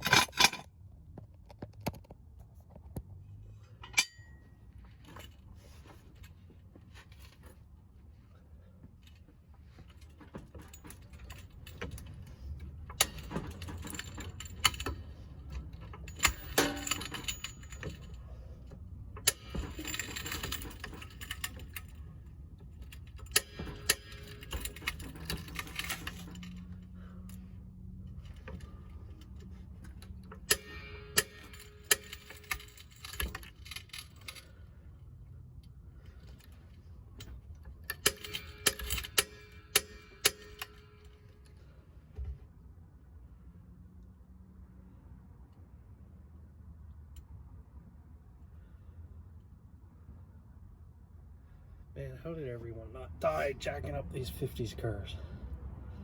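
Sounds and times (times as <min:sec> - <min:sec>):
metal clanks and rattles: 0:00.0 - 0:07.7, 0:08.9 - 0:42.4.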